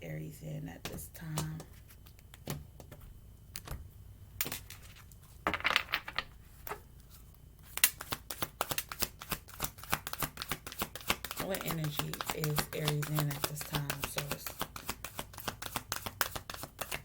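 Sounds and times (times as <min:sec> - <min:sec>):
cards slapping and rustling: 0:07.1 - 0:17.0.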